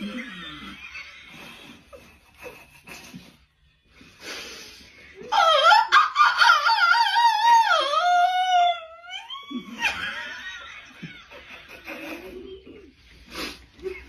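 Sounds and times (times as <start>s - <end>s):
soft breathy noises: 1.3s - 5.2s.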